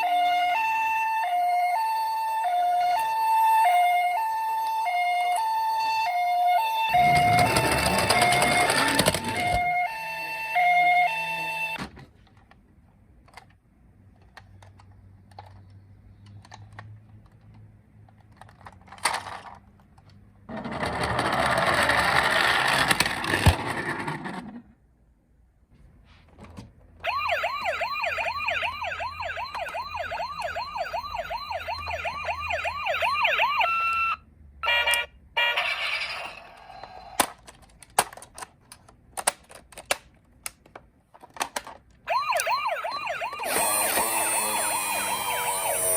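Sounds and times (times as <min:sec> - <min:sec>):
toy ambulance siren wailing: 0:00.0 - 0:11.8, 0:27.0 - 0:37.0, 0:42.1 - 0:45.9
toy cars rattling and scraping: 0:06.9 - 0:09.7, 0:13.2 - 0:24.8, 0:35.4 - 0:45.9
clicks of handling toys: 0:11.8 - 0:20.2, 0:36.6 - 0:42.6.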